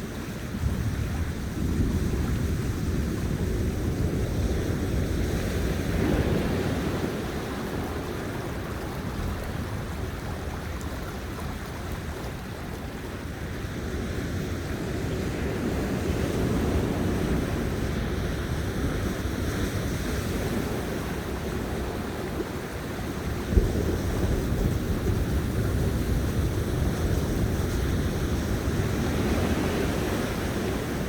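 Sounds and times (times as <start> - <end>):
sea waves washing on beach: 0.0 - 31.0
wind rumbling on microphone: 0.0 - 31.0.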